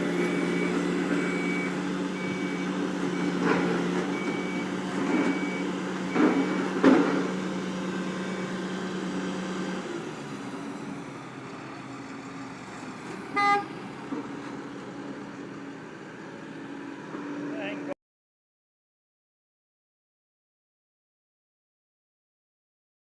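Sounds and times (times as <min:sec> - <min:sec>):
diesel engine running: 0:00.0 - 0:18.0
reversing alarm beeping: 0:00.1 - 0:03.4, 0:04.1 - 0:06.7, 0:08.1 - 0:08.6
short horn toot: 0:13.4 - 0:13.7.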